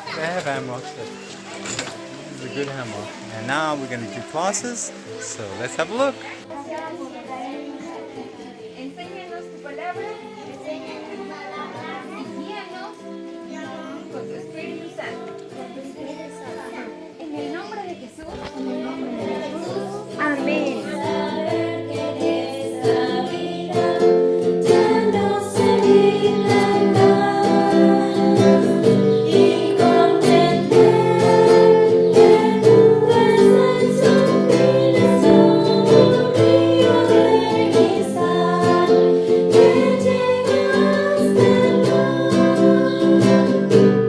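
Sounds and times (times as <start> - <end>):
plucked strings: 18.2 - 44.0
person singing: 18.4 - 43.9.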